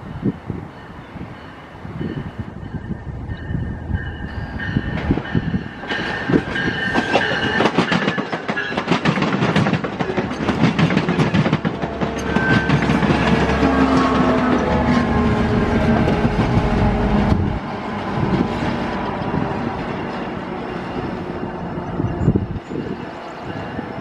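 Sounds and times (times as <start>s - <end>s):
train wheels clacking on rails: 2.0s - 17.4s.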